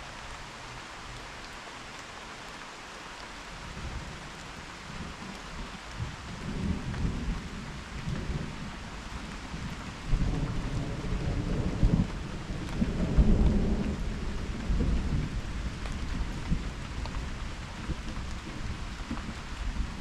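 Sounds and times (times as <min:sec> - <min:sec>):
rain hissing: 0:00.0 - 0:20.0
thunder rumbling: 0:06.0 - 0:20.0.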